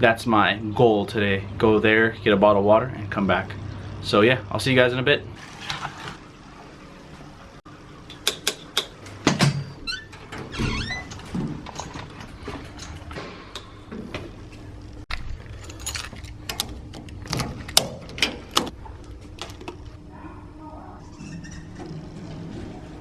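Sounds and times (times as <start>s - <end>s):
objects clicking and rattling: 11.1s - 14.0s, 15.0s - 20.0s.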